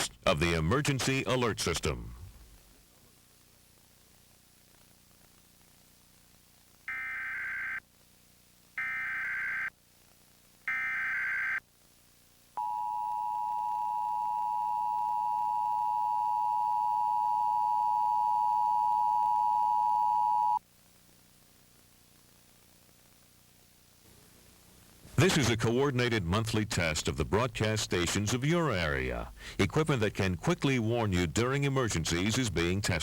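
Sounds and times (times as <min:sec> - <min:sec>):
two-tone attention tone: 0:12.6 - 0:20.6.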